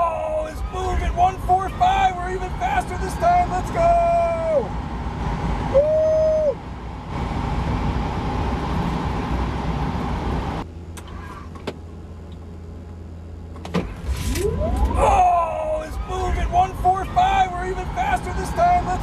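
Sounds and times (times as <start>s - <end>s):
car rumbling hiss: 0.0s - 11.7s
low hum: 0.0s - 19.0s
whine sliding down in pitch: 14.1s - 15.8s.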